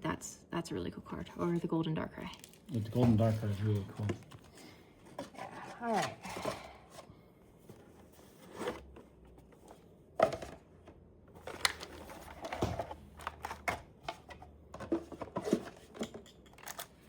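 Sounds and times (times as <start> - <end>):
cardboard packaging rustling: 11.4 - 15.9.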